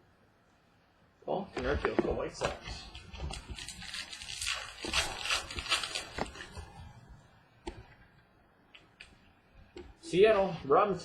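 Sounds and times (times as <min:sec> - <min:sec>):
trading cards and wrapping rustling: 0:01.6 - 0:06.8.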